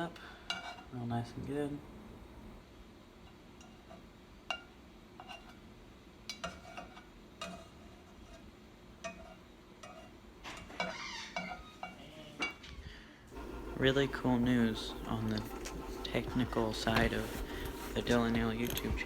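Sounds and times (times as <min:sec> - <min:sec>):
utensil clinking against pot: 0:13.3 - 0:19.0.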